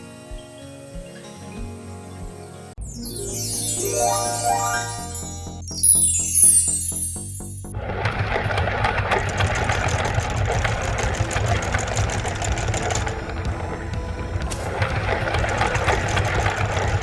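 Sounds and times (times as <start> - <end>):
music: 0.0 - 17.0
heavy vehicle engine running: 7.7 - 17.0.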